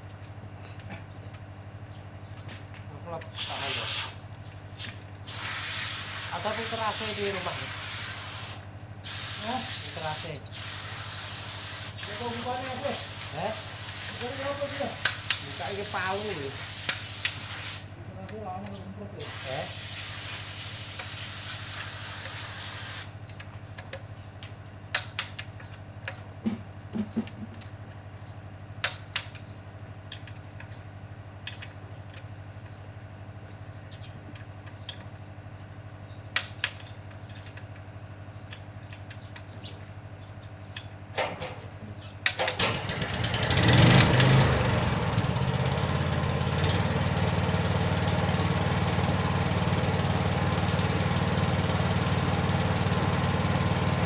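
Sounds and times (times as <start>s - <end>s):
hiss of air: 3.4s - 4.2s, 4.8s - 18.0s, 19.2s - 23.2s
motor running: 3.4s - 17.9s, 42.6s - 54.0s.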